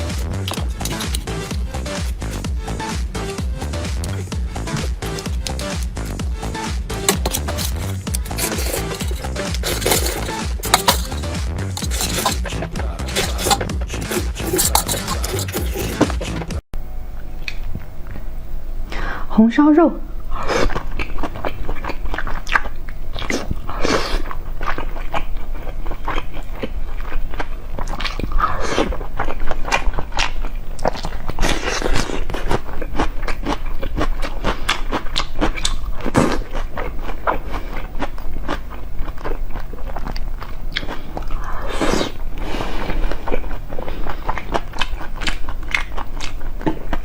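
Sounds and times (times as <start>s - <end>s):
person chewing wetly: 0.0s - 2.4s, 7.1s - 16.1s, 20.6s - 42.1s, 43.0s - 47.0s.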